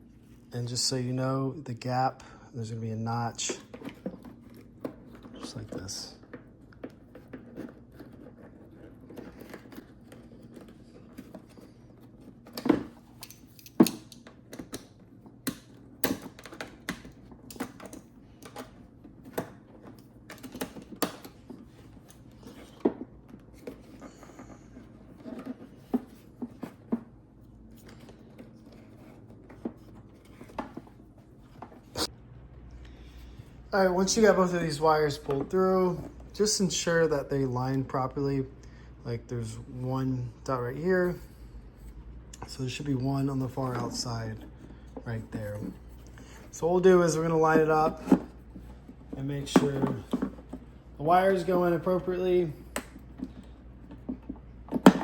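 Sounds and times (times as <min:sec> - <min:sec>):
plastic parts clicking and knocking: 0:03.5 - 0:27.1.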